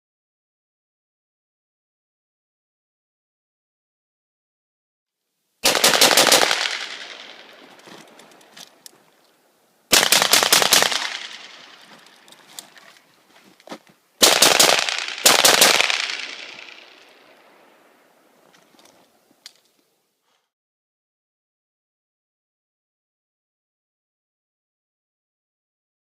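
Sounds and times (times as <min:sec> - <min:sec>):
rapid rifle gunfire with echo: 0:05.6 - 0:07.8, 0:09.9 - 0:12.0, 0:14.2 - 0:17.6.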